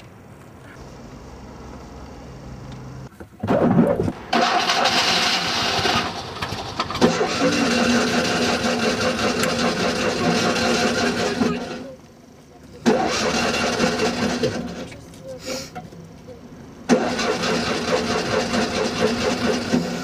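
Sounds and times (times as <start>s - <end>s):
starter motor cranking: 4.3s - 11.8s, 12.8s - 14.9s, 16.9s - 20.0s
small engine running: 7.0s - 11.9s, 12.8s - 15.0s, 16.9s - 20.0s.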